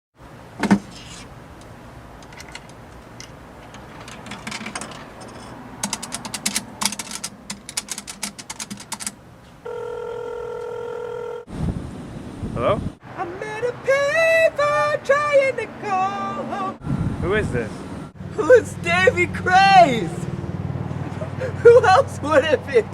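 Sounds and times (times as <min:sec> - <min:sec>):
phone ringing tone: 0:09.6 - 0:11.5.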